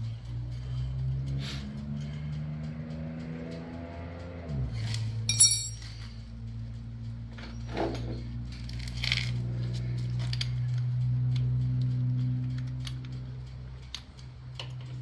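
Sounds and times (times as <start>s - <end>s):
metal tools clinking: 5.3s - 6.0s.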